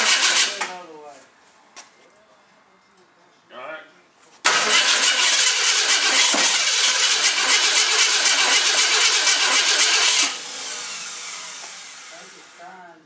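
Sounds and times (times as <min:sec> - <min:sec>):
starter cranking engine: 0:00.0 - 0:00.6, 0:04.5 - 0:12.1.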